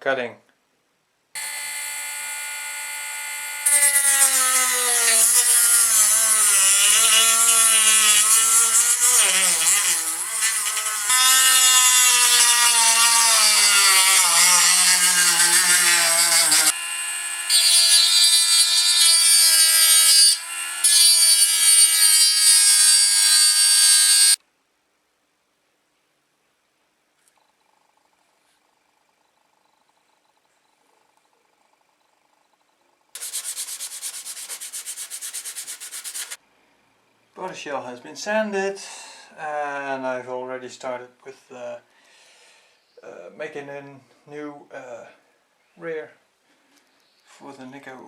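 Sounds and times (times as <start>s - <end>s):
power tool cutting plastic: 1.4s - 24.4s, 33.2s - 36.4s.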